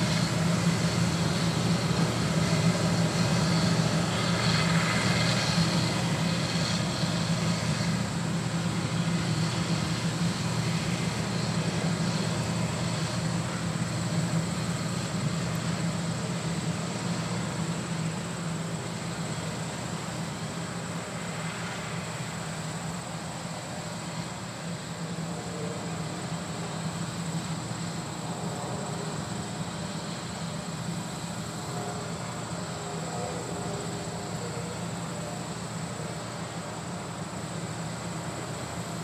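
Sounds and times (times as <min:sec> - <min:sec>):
combine harvester drone: 0:00.0 - 0:39.0
high machinery whine: 0:00.0 - 0:39.0.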